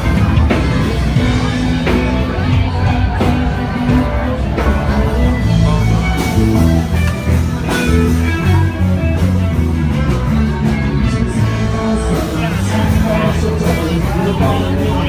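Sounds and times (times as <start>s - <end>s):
live rock band music: 0.0s - 15.0s.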